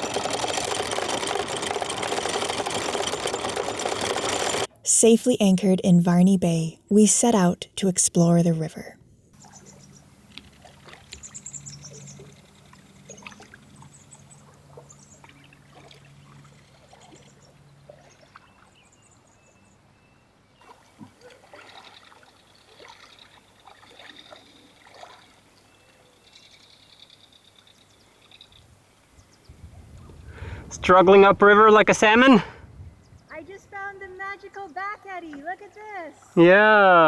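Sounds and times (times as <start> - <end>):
river water trickling: 9.4 - 19.8, 20.6 - 29.4.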